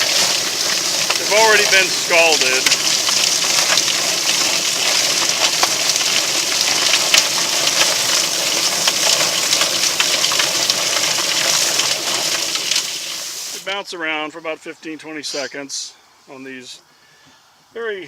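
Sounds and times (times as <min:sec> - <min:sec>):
water spray hissing: 0:00.0 - 0:13.7.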